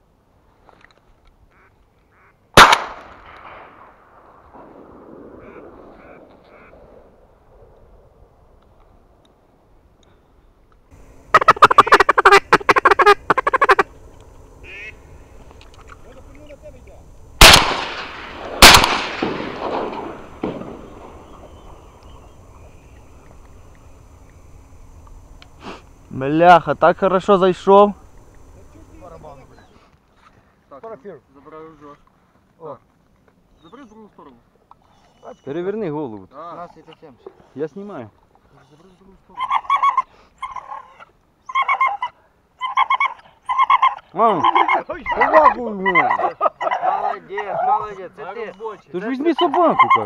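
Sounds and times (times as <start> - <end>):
duck quacks: 1.5 - 2.4, 5.4 - 6.7, 11.3 - 13.9, 14.6 - 15.0, 49.4 - 50.0
loud shotgun shot: 2.6 - 6.3, 17.4 - 21.9
fainter bang: 17.4 - 22.0.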